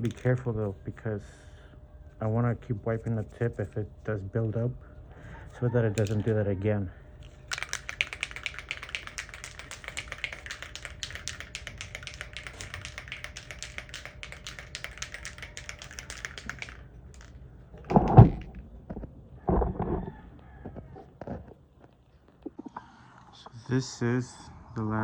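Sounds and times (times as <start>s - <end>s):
spray can rattling: 0.0s - 0.4s, 6.0s - 6.4s, 7.2s - 18.6s.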